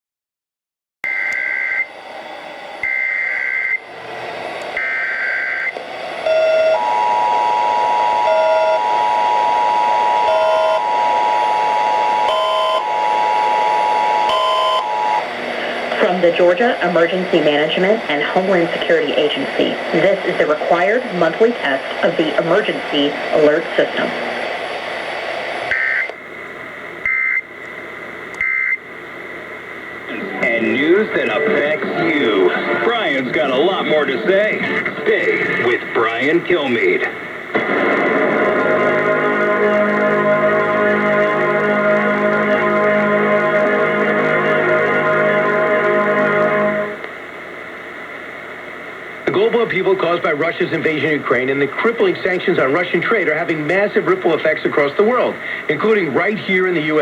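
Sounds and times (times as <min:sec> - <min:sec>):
radio hiss: 0:01.1 - 0:57.0
screechy two-tone data bursts: 0:02.8 - 0:03.8, 0:28.4 - 0:28.8
two-tone attention signal: 0:06.2 - 0:15.2.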